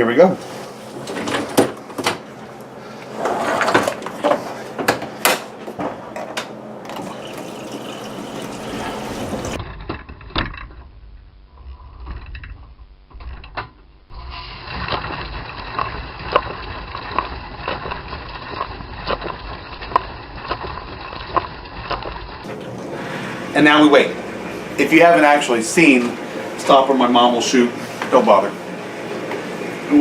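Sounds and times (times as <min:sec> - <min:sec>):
water filling: 0:06.8 - 0:09.6, 0:14.2 - 0:18.6
spraying water rushing: 0:07.0 - 0:09.6.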